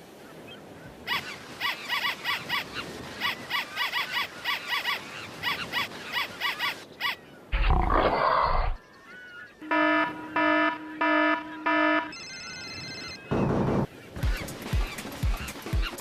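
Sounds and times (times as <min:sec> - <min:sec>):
faint outdoor background: 0:00.0 - 0:16.0
animal-like chirping calls: 0:01.1 - 0:09.6.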